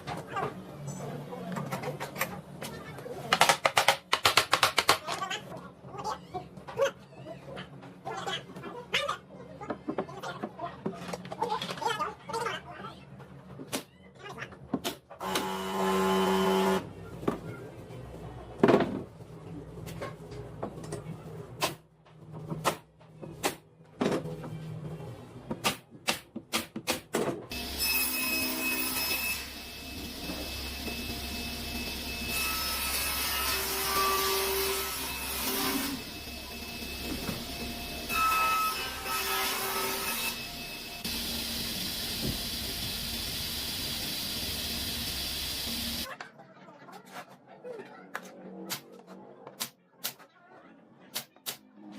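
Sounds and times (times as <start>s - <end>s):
power tool running: 15.2s - 16.9s, 40.3s - 46.1s
workshop tool whining: 15.2s - 16.9s.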